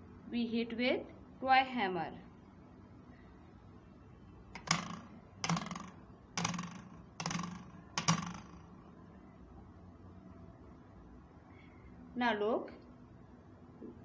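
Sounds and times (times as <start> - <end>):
toy hammer tapping a ruler: 4.6 - 8.8
ruler vibrating buzz: 4.6 - 8.9.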